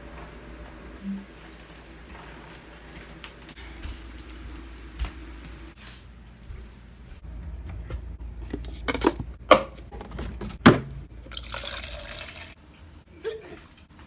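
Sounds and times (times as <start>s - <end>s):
water running: 11.3s - 12.6s.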